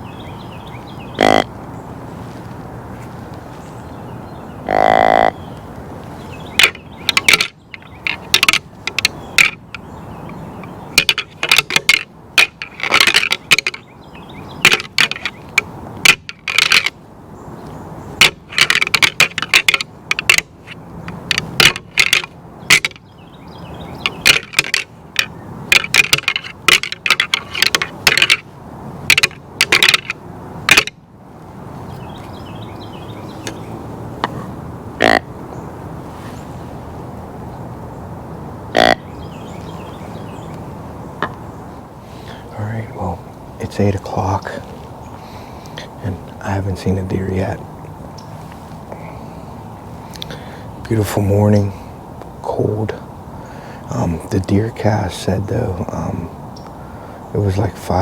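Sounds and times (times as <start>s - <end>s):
deer grunt call: 1.2s - 1.5s, 4.6s - 5.4s, 34.3s - 35.3s, 38.7s - 39.1s
antlers rattling and clashing: 6.6s - 9.9s, 10.6s - 13.9s, 14.6s - 17.0s, 18.2s - 23.1s, 24.0s - 31.0s.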